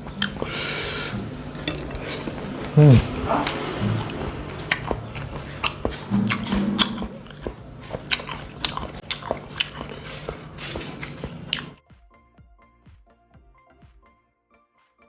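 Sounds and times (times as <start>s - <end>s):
low hum: 0.0s - 11.6s
person chewing fish: 0.0s - 11.8s
wet mouth clicks and smacks: 3.4s - 9.9s.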